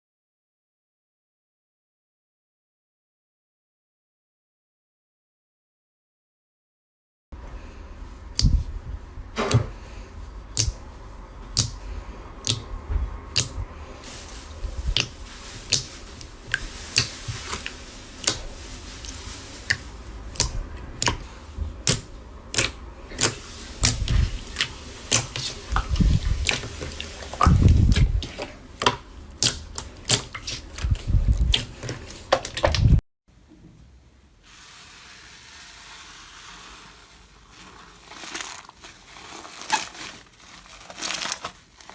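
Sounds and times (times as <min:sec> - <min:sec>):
slime clicking and popping: 0:12.4 - 0:12.7, 0:19.7 - 0:21.2, 0:21.8 - 0:24.0, 0:27.4 - 0:30.6.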